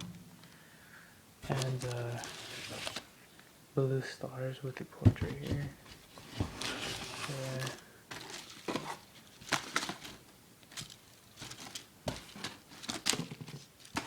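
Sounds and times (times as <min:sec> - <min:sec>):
plastic wrap and cardboard crinkling: 0:01.4 - 0:03.2, 0:05.1 - 0:14.0.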